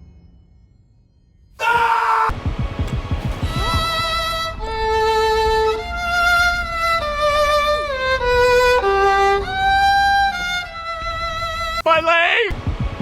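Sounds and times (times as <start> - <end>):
slow violin melody: 3.3 - 11.8.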